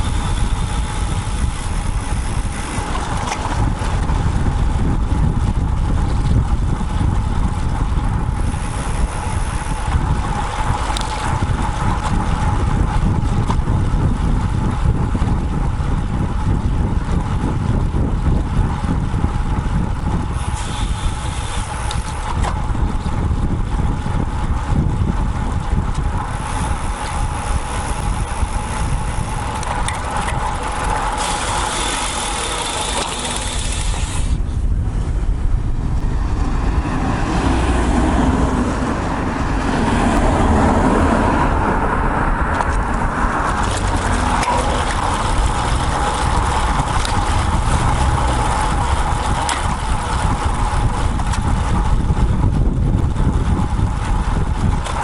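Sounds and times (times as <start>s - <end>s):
bike tyre noise: 0.0s - 55.0s
wind on microphone: 0.0s - 55.0s
motor vehicle passing: 26.3s - 52.6s.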